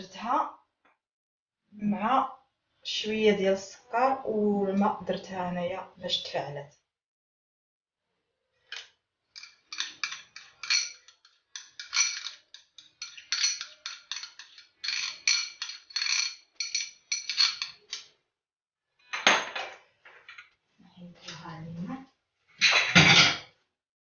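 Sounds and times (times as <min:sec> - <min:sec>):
spoon clinking against dishware: 0:09.4 - 0:17.9
dishware clatter: 0:09.4 - 0:18.0, 0:22.6 - 0:23.5.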